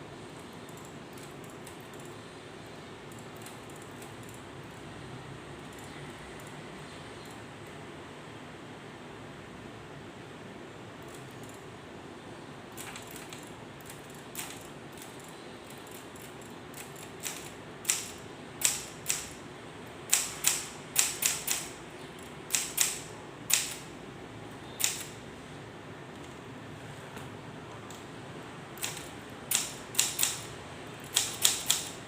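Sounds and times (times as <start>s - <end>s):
typewriter keys clacking: 12.8s - 19.3s, 20.1s - 23.8s, 24.8s - 25.2s, 28.8s - 32.0s.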